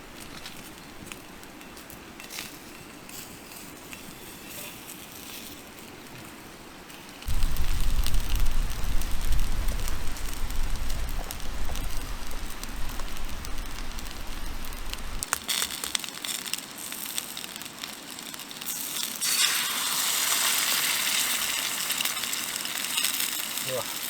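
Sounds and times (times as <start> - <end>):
fire crackling: 0.0 - 24.0
food sizzling while frying: 0.0 - 24.0
low rumble: 7.3 - 15.3.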